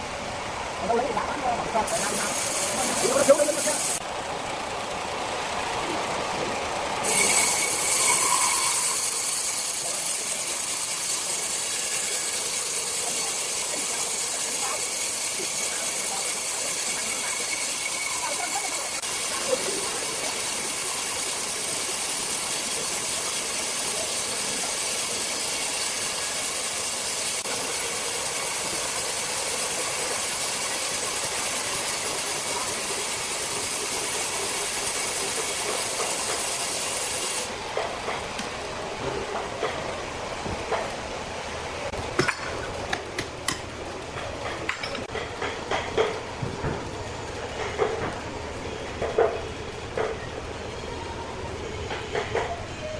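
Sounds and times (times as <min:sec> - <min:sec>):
circular saw cutting wood: 0:01.8 - 0:04.1, 0:06.4 - 0:37.6.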